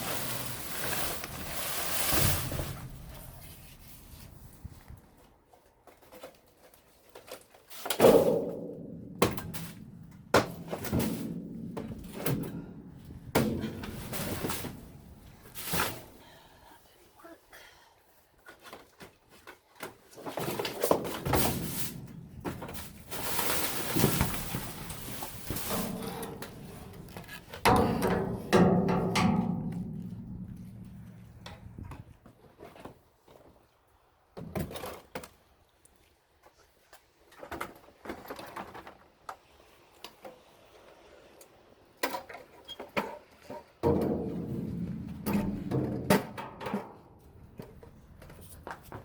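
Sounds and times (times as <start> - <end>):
thuds and clatter: 0.0 - 4.8, 7.9 - 16.1, 20.2 - 32.2, 43.8 - 47.8
rustling: 0.0 - 8.0, 18.4 - 33.4
loud ringing metal bang: 27.7 - 31.7.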